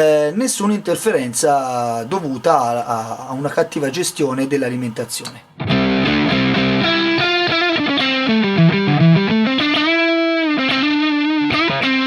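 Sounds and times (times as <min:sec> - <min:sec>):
distorted electric guitar: 0:05.5 - 0:12.0.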